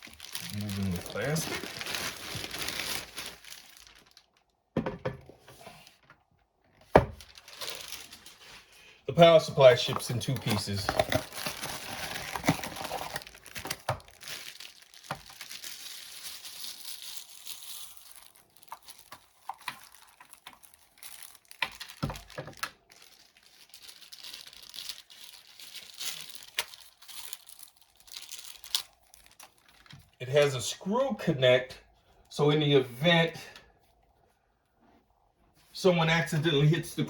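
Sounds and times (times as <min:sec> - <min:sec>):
plastic wrapping crinkling: 0:00.0 - 0:04.6, 0:07.0 - 0:30.2.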